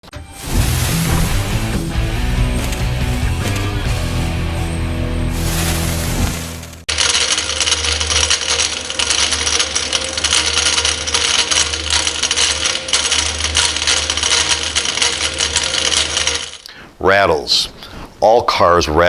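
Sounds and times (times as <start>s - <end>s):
fast metallic rattling: 6.8s - 16.6s.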